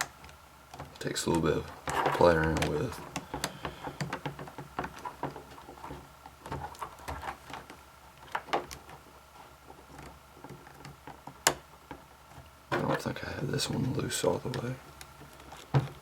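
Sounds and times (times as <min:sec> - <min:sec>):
small clicks and knocks of tools: 0:00.0 - 0:09.0.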